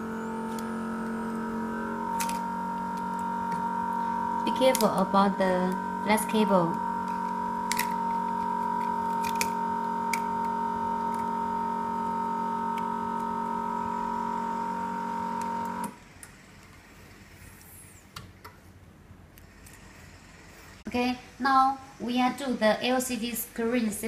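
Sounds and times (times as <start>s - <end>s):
vacuum pump humming: 0.0s - 16.0s.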